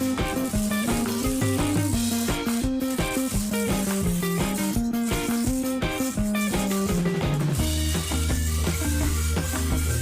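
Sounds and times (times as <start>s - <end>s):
drums: 0.0s - 10.0s
guitar: 0.0s - 10.0s.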